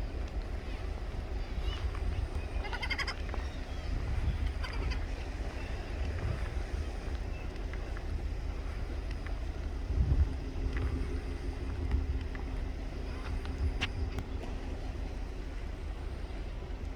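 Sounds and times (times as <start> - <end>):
faint steady hum: 0.0 - 16.9
wind buffeting microphone: 0.0 - 16.9.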